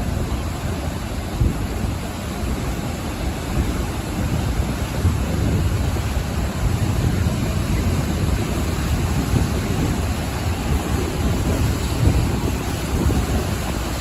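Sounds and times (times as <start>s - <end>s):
ocean waves breaking on shore: 0.0s - 14.0s.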